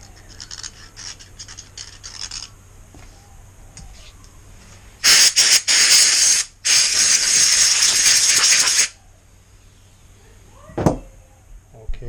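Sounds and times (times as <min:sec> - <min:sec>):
pressurised jet hissing: 0:05.0 - 0:09.0.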